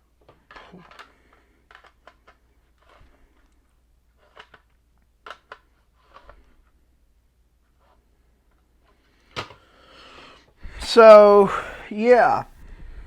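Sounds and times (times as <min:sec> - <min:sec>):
plastic handling clicks and rustles: 0:00.1 - 0:06.8.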